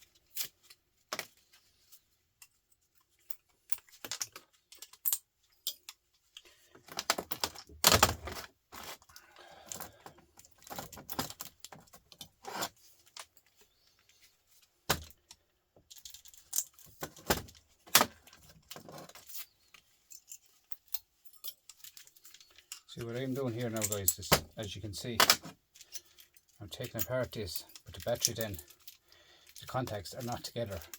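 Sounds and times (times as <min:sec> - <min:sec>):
small metal parts clicking: 0:02.4 - 0:08.1, 0:15.1 - 0:17.0, 0:18.0 - 0:24.4, 0:25.7 - 0:30.9.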